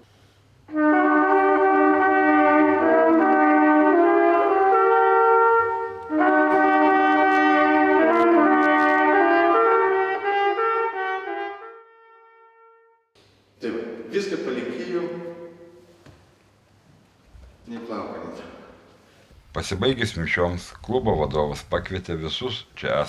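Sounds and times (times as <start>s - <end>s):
brass instruments playing chords: 0.6s - 13.0s.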